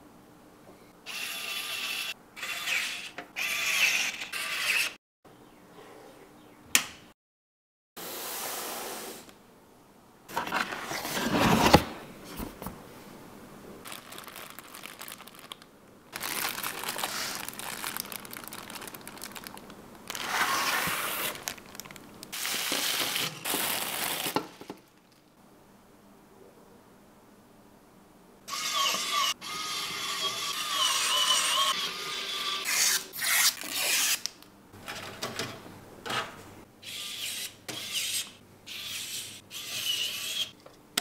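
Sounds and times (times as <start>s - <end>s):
packaging crinkling and rustling: 13.8s - 25.2s.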